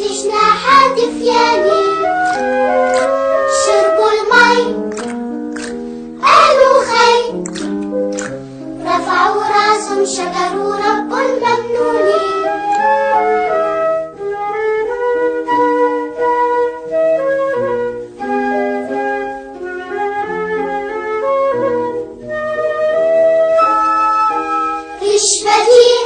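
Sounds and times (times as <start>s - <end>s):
flute-like melody: 0.3s - 5.1s, 11.8s - 25.0s.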